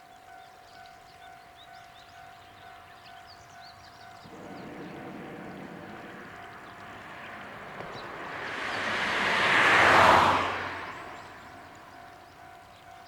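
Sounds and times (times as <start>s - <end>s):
small birds chirping: 2.5s - 12.4s
diesel railcar rumbling: 4.1s - 12.4s.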